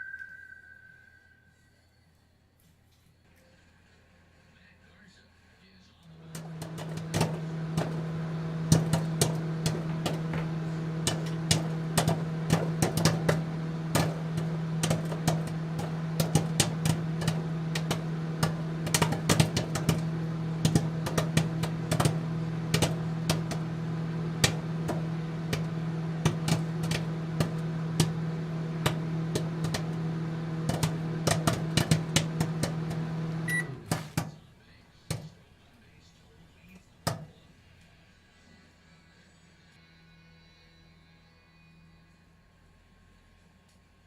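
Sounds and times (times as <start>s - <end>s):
short beep: 0.0s - 2.0s
microwave oven humming: 3.0s - 44.0s.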